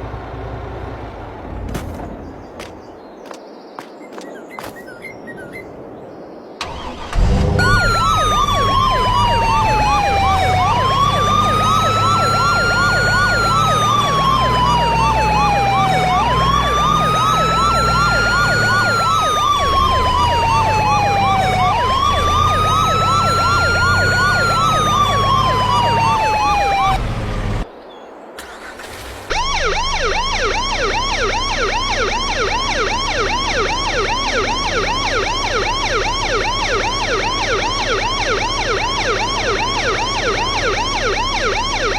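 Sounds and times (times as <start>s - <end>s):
electronic siren horn wailing: 6.6s - 27.2s, 29.3s - 41.9s.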